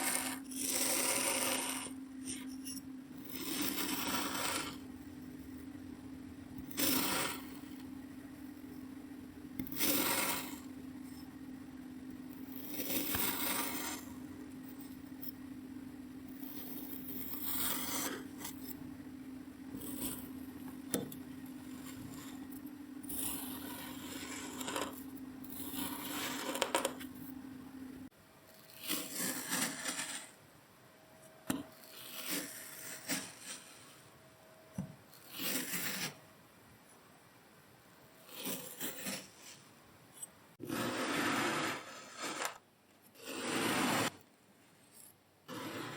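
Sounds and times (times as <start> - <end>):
steady low hum: 0.0 - 28.6
kinetic sand scraping: 40.6 - 42.6, 43.2 - 44.2.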